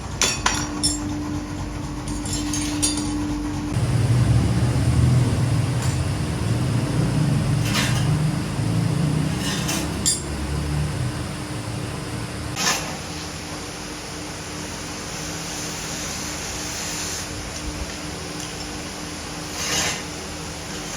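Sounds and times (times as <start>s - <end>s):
machine low rumble: 0.0s - 12.6s.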